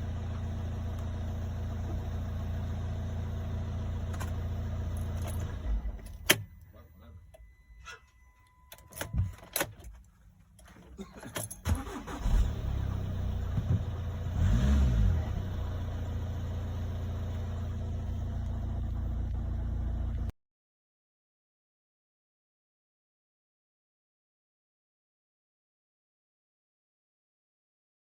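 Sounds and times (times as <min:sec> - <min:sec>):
diesel engine starting and idling: 0:00.0 - 0:10.0, 0:10.6 - 0:20.3.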